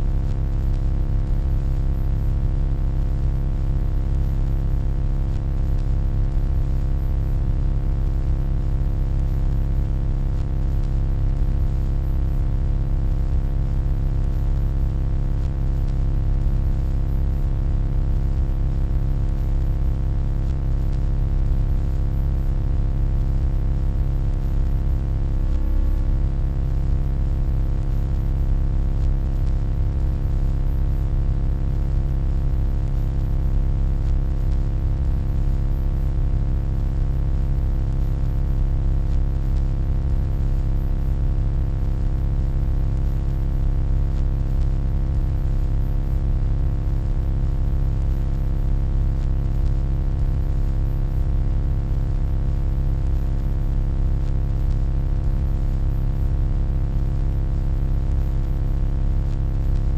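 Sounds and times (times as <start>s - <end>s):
electronic hum: 0.0s - 43.6s, 44.2s - 46.5s, 50.1s - 50.4s.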